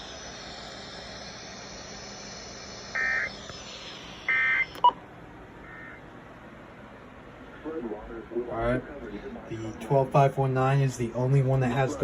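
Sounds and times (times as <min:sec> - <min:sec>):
radio receiver hiss: 0:00.0 - 0:04.9
digital data tone bursts: 0:00.0 - 0:05.0, 0:05.6 - 0:06.0.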